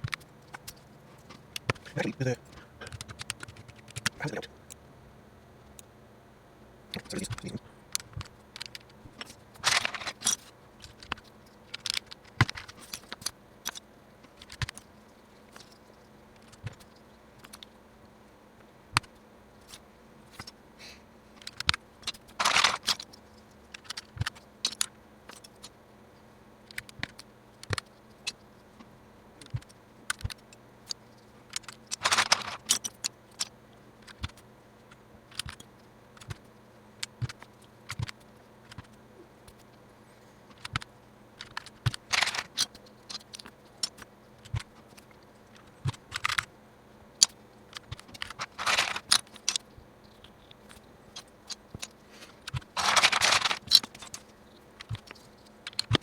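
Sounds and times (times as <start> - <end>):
plastic keycaps clicking: 0.0 - 4.4.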